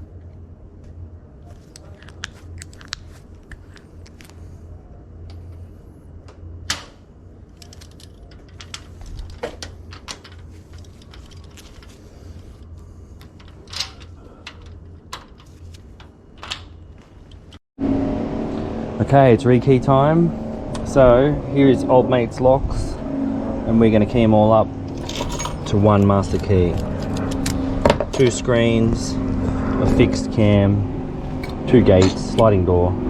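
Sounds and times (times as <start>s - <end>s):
low steady hum: 0.0s - 33.0s
metal clicks of lock parts and tools: 7.5s - 11.8s, 13.2s - 17.6s, 24.9s - 26.1s.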